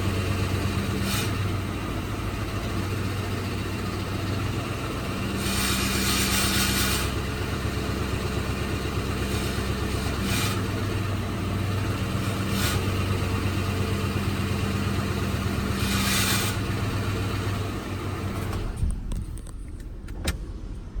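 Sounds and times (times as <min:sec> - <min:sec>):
car engine running: 0:00.0 - 0:21.0
rattle: 0:04.8 - 0:17.5.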